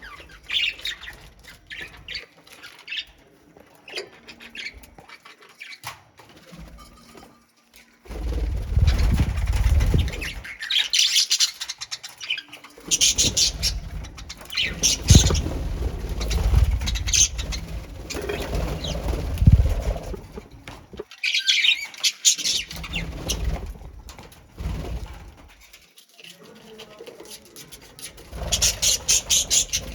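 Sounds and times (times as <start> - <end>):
birds flapping wings: 8.1 - 10.5, 12.9 - 21.0, 22.7 - 25.5.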